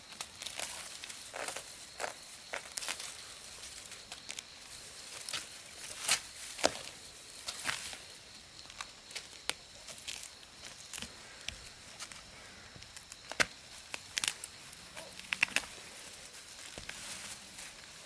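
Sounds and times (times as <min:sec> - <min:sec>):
rustling: 0:00.1 - 0:18.0.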